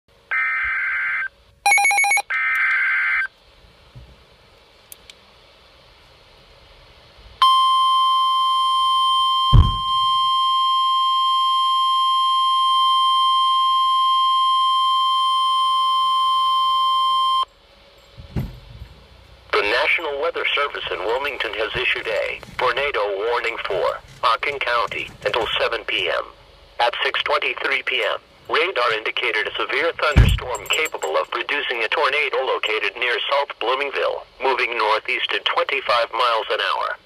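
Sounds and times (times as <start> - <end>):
steady high alarm tone: 7.4 - 17.5.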